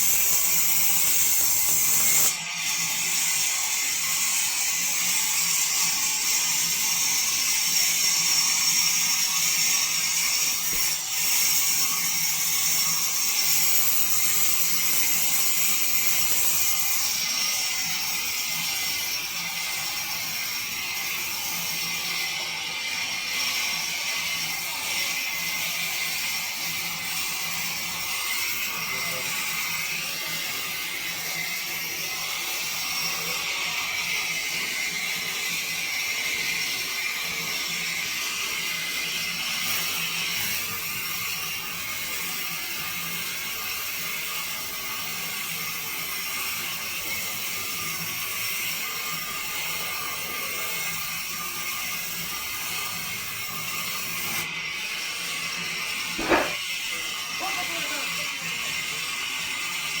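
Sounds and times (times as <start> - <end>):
sawmill machinery running: 0.0 - 38.0, 53.8 - 59.0.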